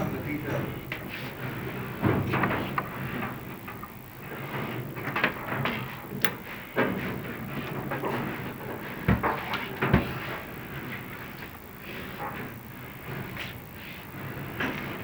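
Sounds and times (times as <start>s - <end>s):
low steady hum: 0.0s - 5.2s
irregular knocks and clatter: 0.0s - 11.2s.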